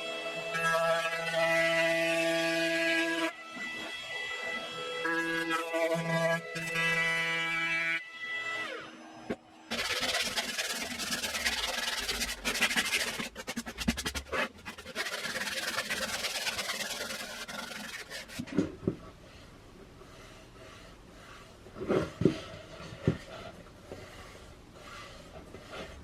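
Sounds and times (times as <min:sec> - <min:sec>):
hand sanding rubbing and scraping: 0:09.7 - 0:18.6, 0:19.9 - 0:26.0.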